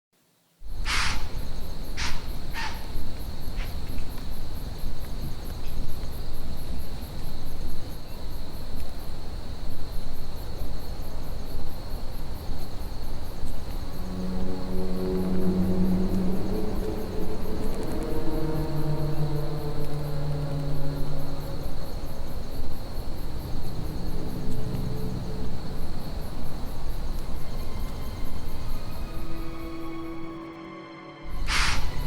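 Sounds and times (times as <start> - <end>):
crickets chirping: 0.6 - 30.6, 31.2 - 32.0
low rumbling noise: 13.7 - 30.4
low droning tone: 13.9 - 29.3.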